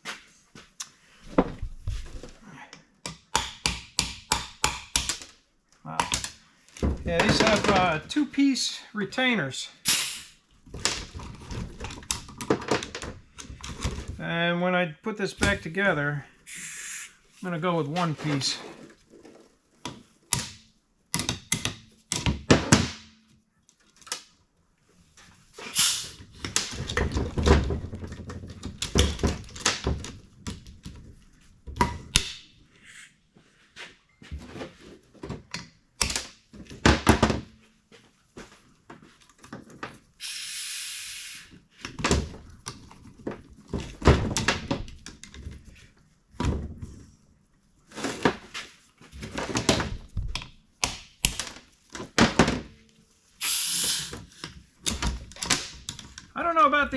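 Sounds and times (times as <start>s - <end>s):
short hiss: 9.8s - 10.4s, 16.5s - 17.2s, 25.6s - 26.2s, 40.2s - 41.5s, 53.4s - 54.2s.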